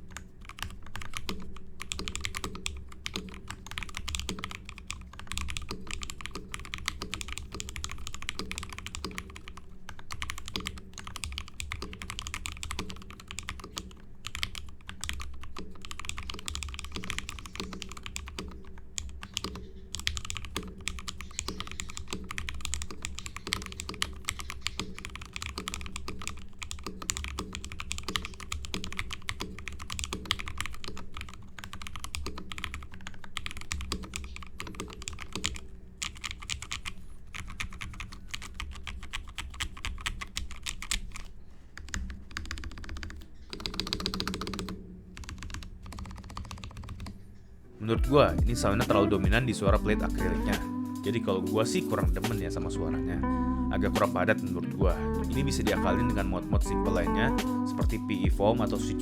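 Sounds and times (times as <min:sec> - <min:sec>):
keyboard typing: 0:00.0 - 0:53.3, 0:53.9 - 0:59.0.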